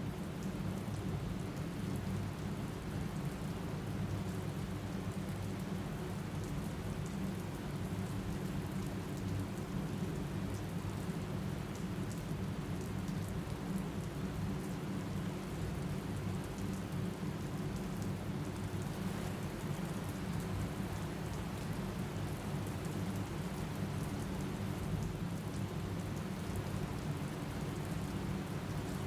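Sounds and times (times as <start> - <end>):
steady rain hiss: 9.7 - 29.0.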